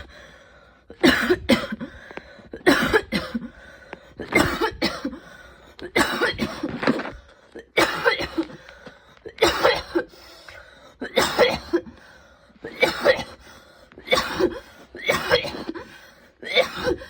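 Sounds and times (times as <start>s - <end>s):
woman coughing: 1.0s - 1.9s, 2.6s - 3.5s, 4.3s - 5.2s, 5.9s - 7.0s, 7.7s - 8.6s, 9.4s - 10.1s, 11.0s - 11.9s, 12.7s - 13.4s, 14.0s - 17.0s.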